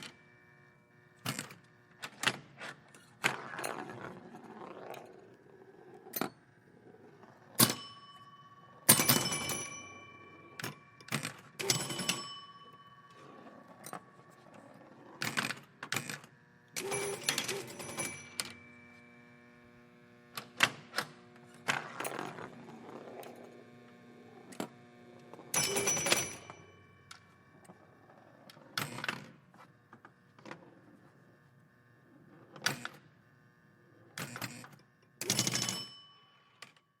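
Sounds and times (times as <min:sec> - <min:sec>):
ringing bell tones: 0:07.6 - 0:14.1, 0:16.8 - 0:19.0, 0:25.5 - 0:27.1
pinball flipper and bumper clacks: 0:10.6 - 0:12.6, 0:15.2 - 0:18.7, 0:20.3 - 0:22.6, 0:25.3 - 0:27.3, 0:34.2 - 0:36.8.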